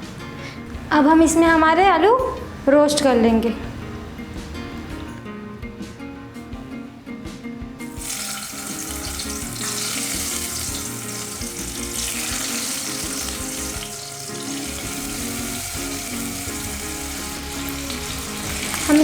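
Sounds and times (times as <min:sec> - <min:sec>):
potato slices sizzling in oil: 0:08.0 - 0:19.0.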